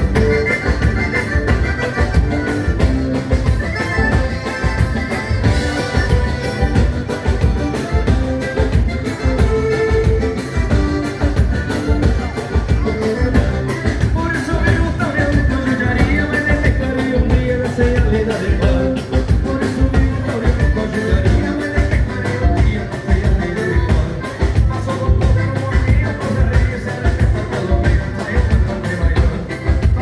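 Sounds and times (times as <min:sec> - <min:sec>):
driving drum beat: 0:00.0 - 0:30.0
live dance band playing: 0:00.0 - 0:30.0.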